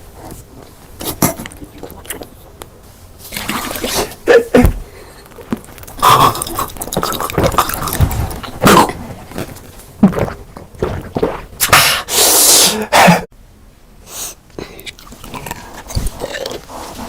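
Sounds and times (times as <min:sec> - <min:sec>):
slurps: 0:00.6 - 0:02.5, 0:03.3 - 0:04.4, 0:05.4 - 0:12.9
wet chewing: 0:01.0 - 0:02.7, 0:05.1 - 0:11.8, 0:14.7 - 0:17.0
bites: 0:05.3 - 0:12.6, 0:14.8 - 0:17.0.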